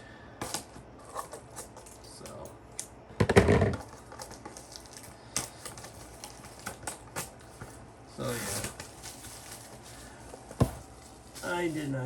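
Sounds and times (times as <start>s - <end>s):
packaging clicks and crinkles: 3.8s - 12.0s.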